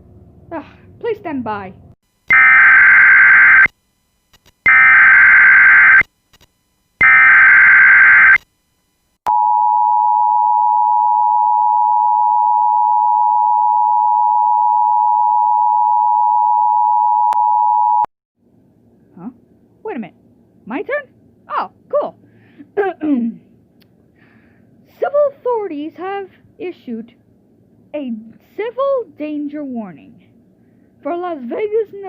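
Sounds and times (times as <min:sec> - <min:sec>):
digital header data tones: 0:04.7 - 0:06.0, 0:07.0 - 0:08.4.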